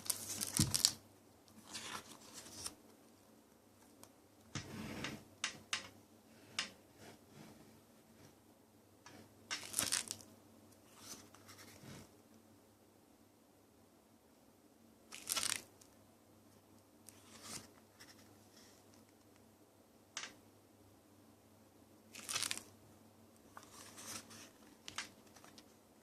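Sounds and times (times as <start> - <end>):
paper rustling and crinkling: 0.0 - 1.0, 1.6 - 2.8, 9.6 - 10.2, 15.1 - 15.7, 22.2 - 22.7, 23.5 - 25.7.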